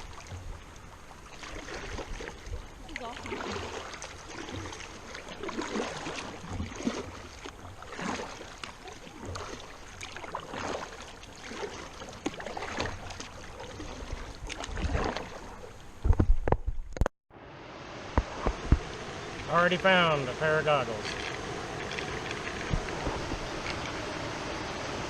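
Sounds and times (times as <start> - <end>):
river water rushing around hull: 0.0 - 16.1, 17.4 - 25.0
kayak paddle splashing: 0.0 - 16.9, 18.1 - 25.0
low rumble buffeting microphone: 13.7 - 25.0.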